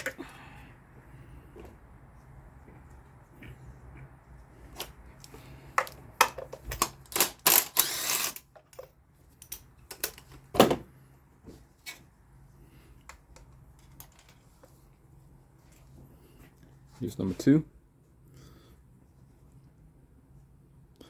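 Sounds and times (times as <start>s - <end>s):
ratchet clicking: 7.1s - 8.5s.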